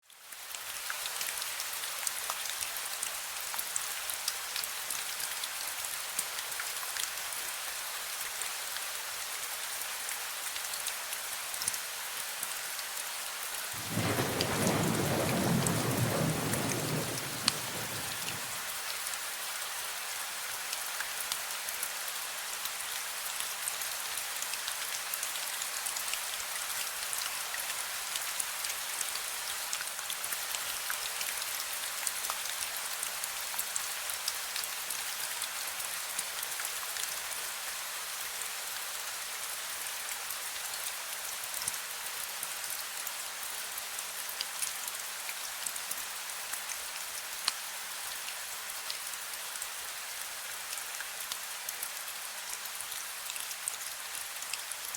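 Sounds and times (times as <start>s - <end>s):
steady rain: 0.0s - 54.9s
thunder rumbling: 13.8s - 18.6s.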